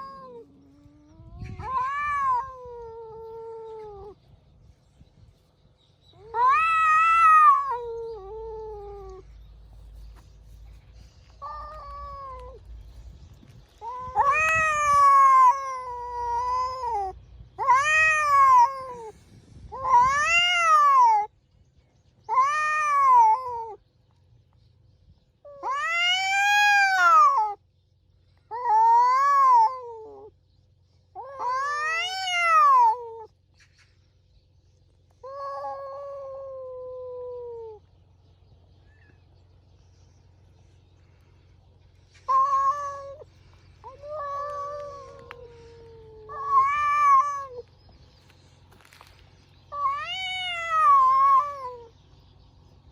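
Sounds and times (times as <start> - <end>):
cats yowling: 0.0 - 4.2, 6.1 - 9.3, 11.3 - 12.8, 13.8 - 21.3, 22.3 - 23.8, 25.4 - 27.6, 28.5 - 30.3, 31.2 - 33.3, 35.1 - 37.9, 42.2 - 47.7, 49.6 - 52.0.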